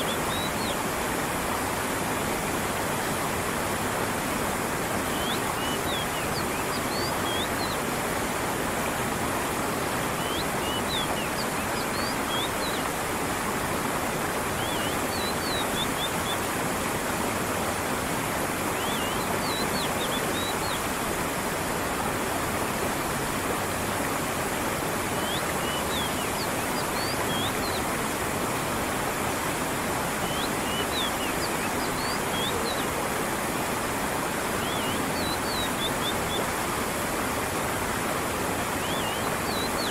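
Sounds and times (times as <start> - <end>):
stream with falling water: 0.0 - 39.9
bird chirping: 38.8 - 39.9.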